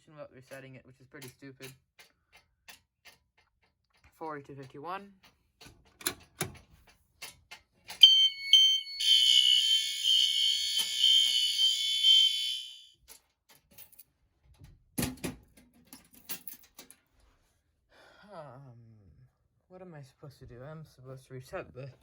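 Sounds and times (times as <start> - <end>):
fire alarm horns: 8.0 - 12.9.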